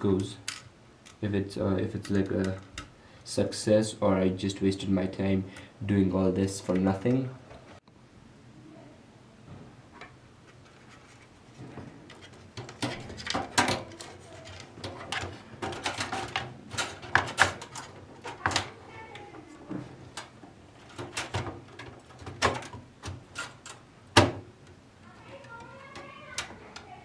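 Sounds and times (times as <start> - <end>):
computer hardware clicking and clattering: 2.0 - 2.9, 10.0 - 27.0.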